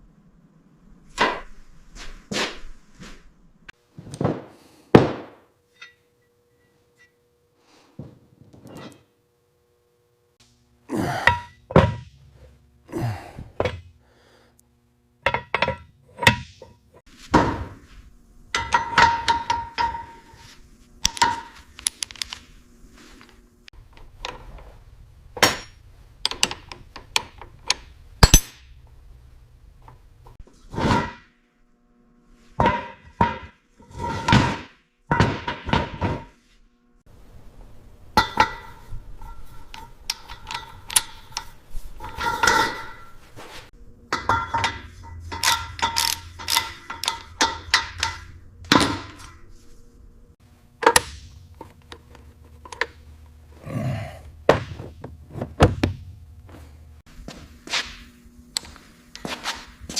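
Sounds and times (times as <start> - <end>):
hand tools knocking and clinking: 15.2 - 16.7, 18.6 - 20.4, 21.1 - 22.4, 25.4 - 28.6, 38.2 - 43.2, 44.1 - 49.4.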